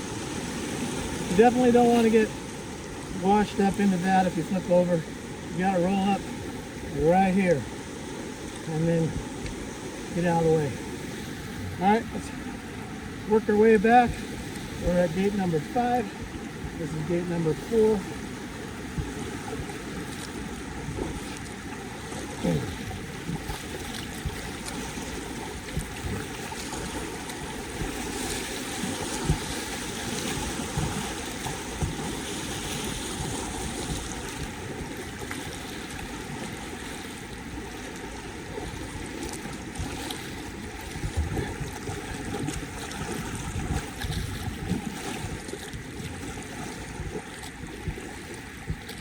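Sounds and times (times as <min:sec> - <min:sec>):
river current rushing and splashing: 0:00.0 - 0:49.0
knocks on kayak: 0:29.2 - 0:29.5, 0:30.6 - 0:32.2.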